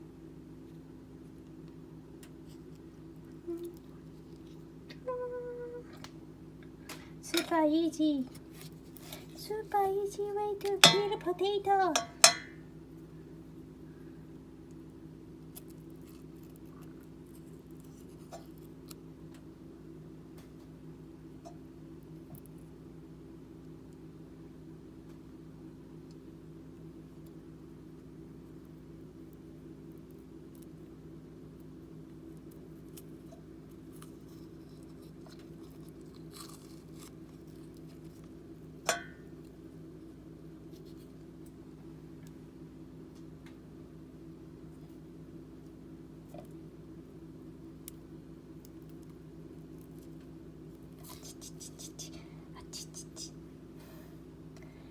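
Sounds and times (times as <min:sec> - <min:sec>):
steady low hum: 0:00.0 - 0:54.9
utensil mashing food in a bowl: 0:10.8 - 0:11.2, 0:11.8 - 0:12.5.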